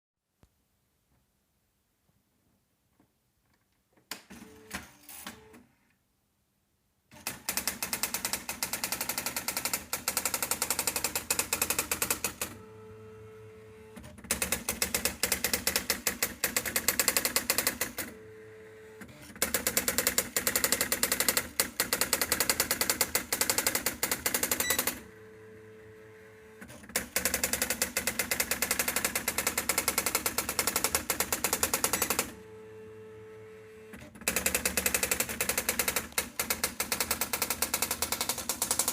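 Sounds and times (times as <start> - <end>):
typewriter rapid typing strikes: 7.2 - 12.6, 14.2 - 18.1, 19.4 - 25.0, 26.9 - 32.4, 34.2 - 38.9
steady typewriter hum: 7.2 - 38.9.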